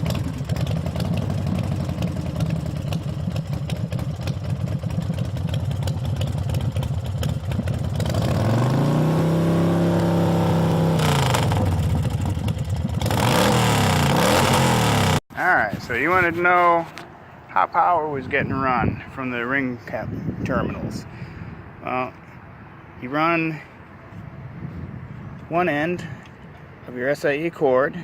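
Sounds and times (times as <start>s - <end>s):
motorcycle engine revving: 0.0s - 15.2s.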